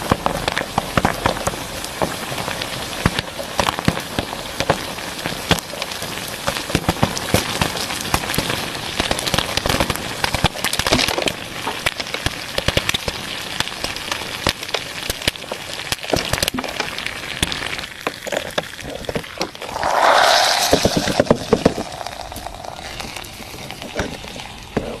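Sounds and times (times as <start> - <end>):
steady sizzling hiss: 19.6 - 24.8.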